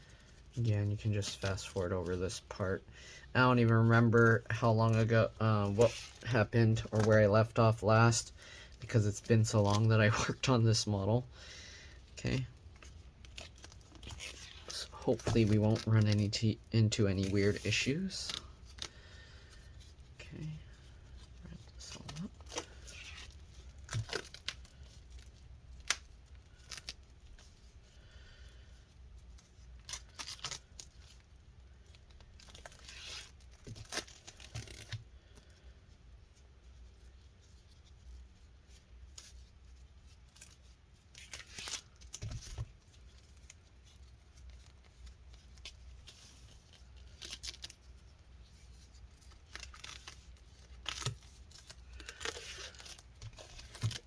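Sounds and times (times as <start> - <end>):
tape and wrapping tearing: 12.3 - 16.5, 20.4 - 27.8, 29.3 - 31.2, 31.8 - 35.4, 40.1 - 54.0.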